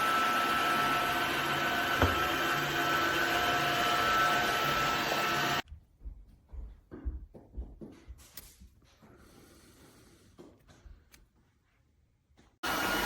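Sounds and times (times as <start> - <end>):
wet-dry floor cleaner running: 0.0 - 5.6, 12.6 - 13.0.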